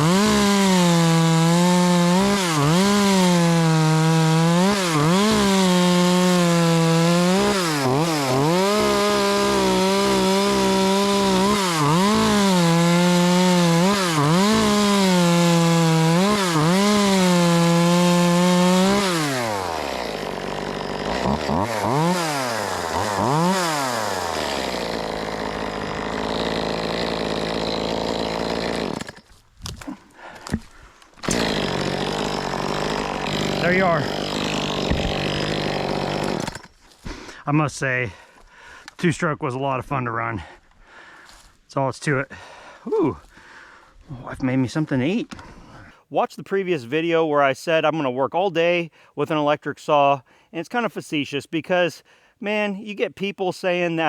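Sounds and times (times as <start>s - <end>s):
chainsaw cutting wood: 0.0s - 37.4s.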